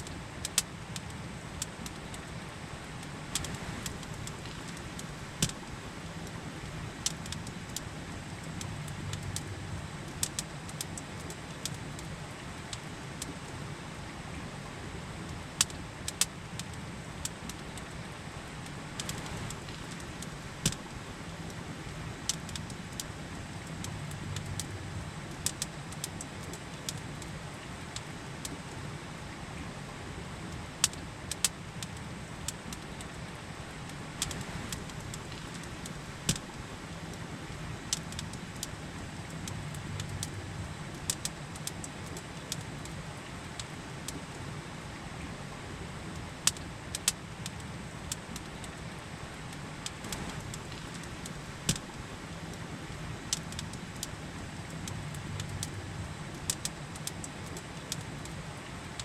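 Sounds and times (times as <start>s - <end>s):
campfire crackling and popping: 0.0s - 13.5s, 15.2s - 28.8s, 30.4s - 44.4s, 46.0s - 59.0s
river rushing: 49.0s - 57.0s.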